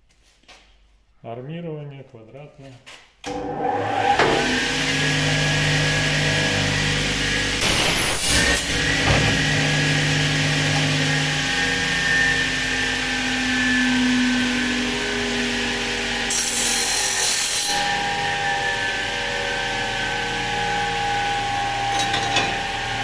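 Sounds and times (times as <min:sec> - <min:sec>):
metal-cutting machine motor hum: 0:03.3 - 0:23.0.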